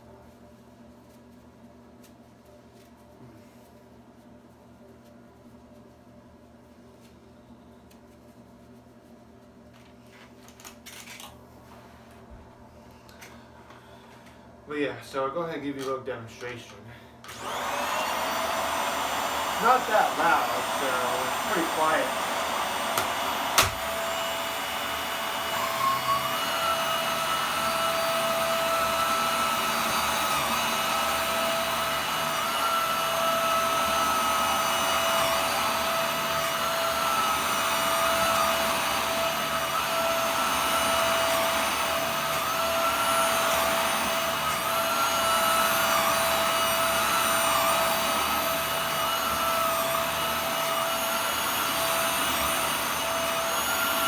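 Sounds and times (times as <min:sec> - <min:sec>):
vacuum cleaner running: 0:17.3 - 0:54.0.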